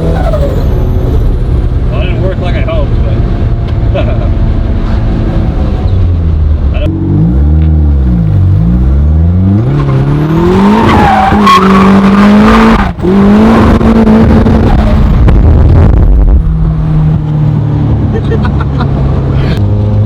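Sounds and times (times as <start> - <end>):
car engine revving hard: 6.8 - 16.1.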